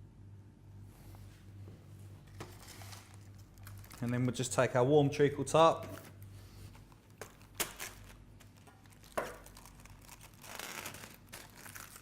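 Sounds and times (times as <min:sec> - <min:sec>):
food packaging crinkling: 0:02.3 - 0:04.7, 0:06.0 - 0:12.0.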